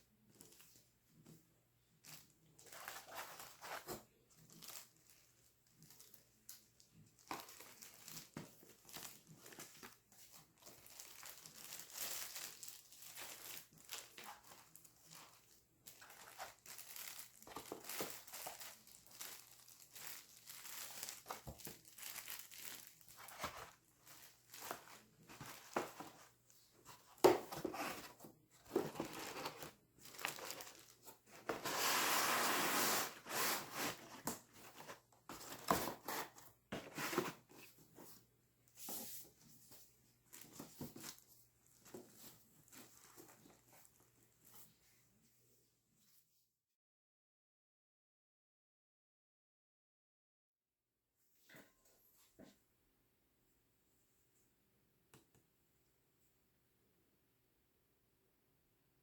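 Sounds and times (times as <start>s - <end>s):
packaging rustling and crinkling: 2.0s - 38.2s, 40.3s - 44.7s.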